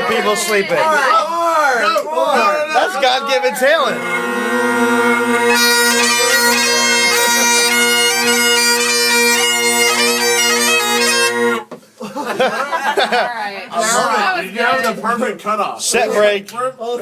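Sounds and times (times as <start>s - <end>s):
bagpipe drones: 2.4s - 11.7s
bagpipe chanter tune: 2.8s - 11.7s.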